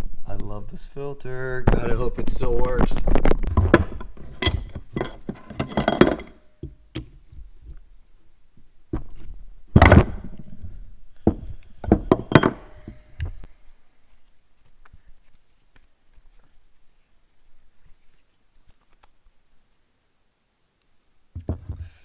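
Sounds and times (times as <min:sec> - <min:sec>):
metal tools clinking: 0:03.5 - 0:07.1, 0:12.1 - 0:13.0.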